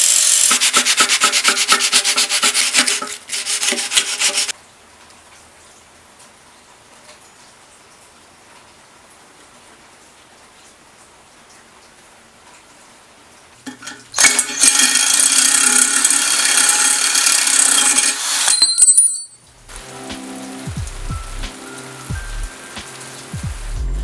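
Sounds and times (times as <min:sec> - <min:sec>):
power tool running: 0:00.0 - 0:04.5, 0:14.2 - 0:18.6
faint hiss: 0:19.5 - 0:24.0.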